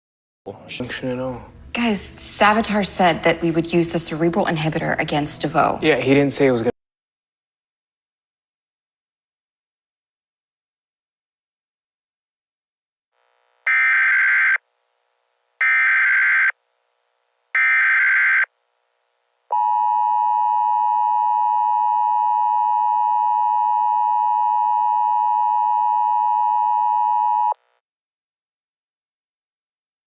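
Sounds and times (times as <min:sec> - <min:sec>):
buzzy alert header tones: 0:13.7 - 0:14.6, 0:17.6 - 0:18.5.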